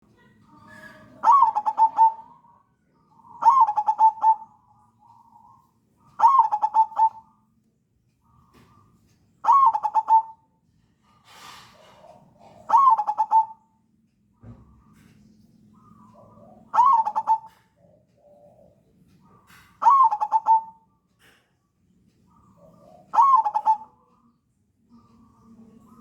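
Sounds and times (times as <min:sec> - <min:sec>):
dove cooing: 0:00.6 - 0:02.6, 0:03.2 - 0:07.3, 0:09.4 - 0:10.4, 0:11.8 - 0:13.6, 0:15.8 - 0:20.9, 0:22.3 - 0:24.3.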